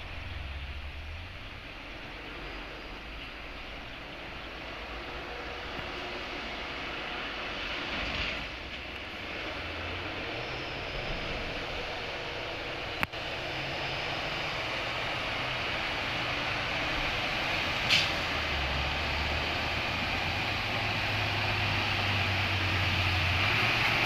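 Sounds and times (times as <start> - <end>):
heavy truck engine running: 0.0 - 24.0
road noise: 0.0 - 24.0
brief hiss: 17.8 - 18.2.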